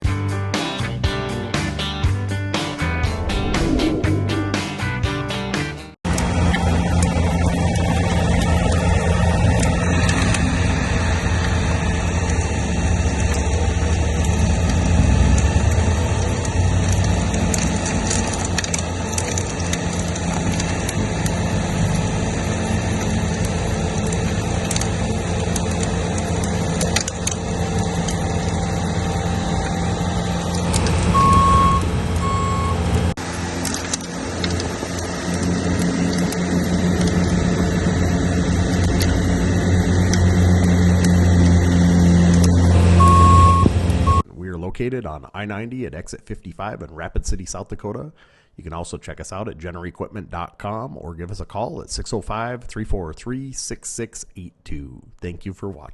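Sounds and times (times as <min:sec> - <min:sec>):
skid steer diesel engine: 0:06.1 - 0:44.3
backup alarm beeping: 0:31.1 - 0:32.9, 0:43.0 - 0:44.3.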